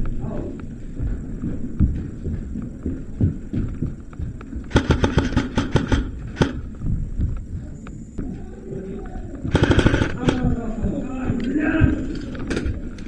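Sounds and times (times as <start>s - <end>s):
low rumble of movement: 0.0s - 13.0s
rapid sharp clacks: 4.6s - 6.9s, 9.5s - 10.9s.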